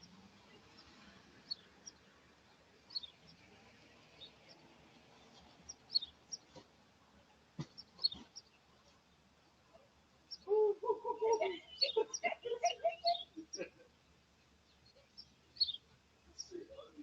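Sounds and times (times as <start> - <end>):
steady low hiss: 0.0 - 17.0
faint bird chirps: 2.8 - 6.6, 7.6 - 8.7, 9.7 - 17.0.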